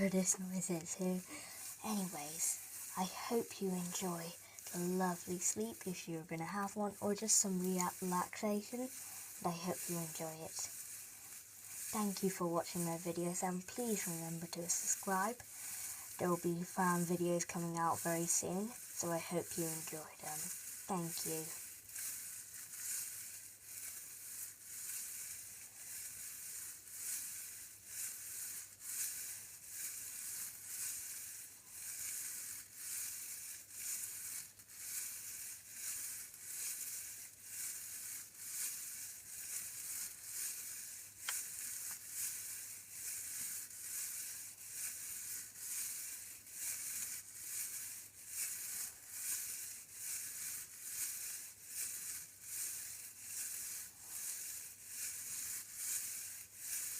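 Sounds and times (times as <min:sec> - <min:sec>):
hissy rattling pulsing: 0:00.0 - 0:23.1.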